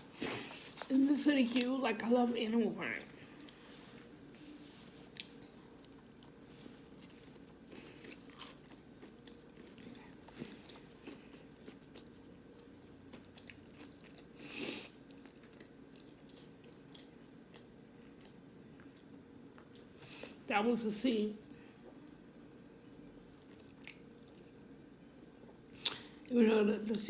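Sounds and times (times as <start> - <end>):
person chewing crunchy food: 4.9 - 19.9.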